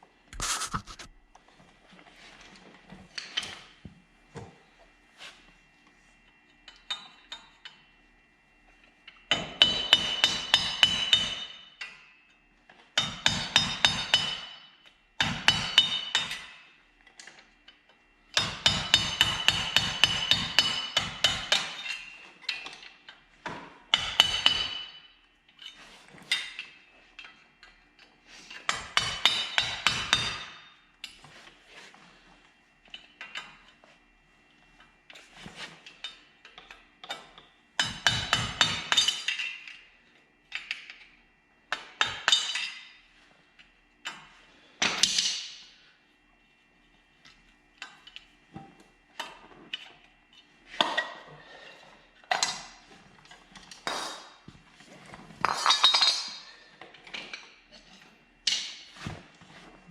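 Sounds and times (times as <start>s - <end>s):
hammer striking metal: 9.3s - 11.6s.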